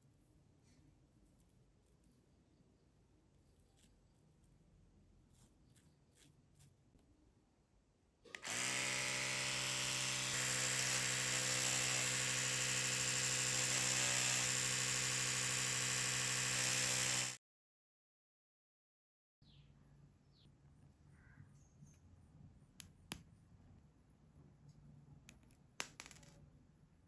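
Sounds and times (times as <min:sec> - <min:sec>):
loud low electric buzz: 0:08.4 - 0:17.4.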